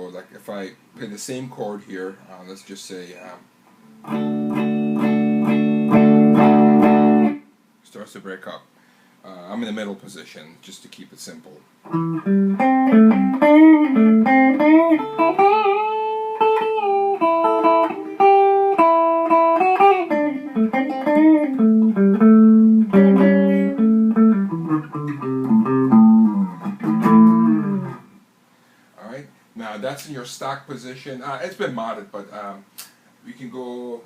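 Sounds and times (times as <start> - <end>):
electric guitar single-note lines: 4.0 - 7.4, 11.9 - 28.1.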